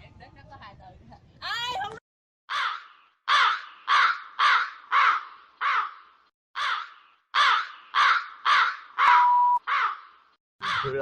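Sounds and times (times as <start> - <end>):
bird cawing: 2.5 - 11.0.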